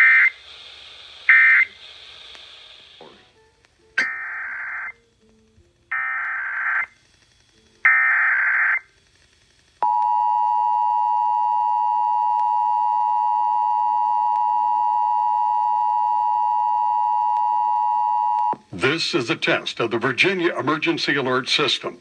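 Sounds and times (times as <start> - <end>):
screeching data bursts: 4.0 - 5.0.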